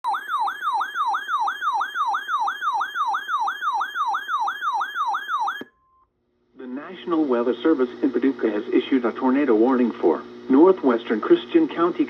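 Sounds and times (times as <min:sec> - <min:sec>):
electronic yelp siren: 0:00.0 - 0:06.0.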